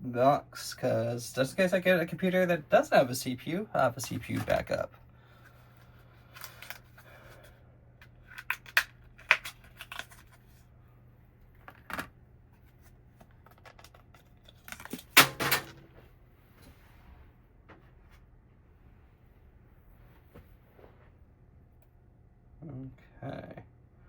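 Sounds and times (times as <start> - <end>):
computer parts clicking and clattering: 13.5 - 15.9.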